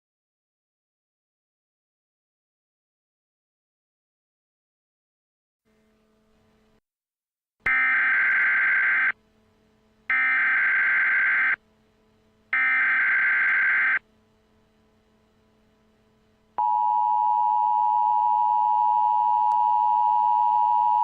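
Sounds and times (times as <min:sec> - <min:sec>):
faint steady hum: 0:07.7 - 0:21.0
screeching digital data tones: 0:10.2 - 0:11.6.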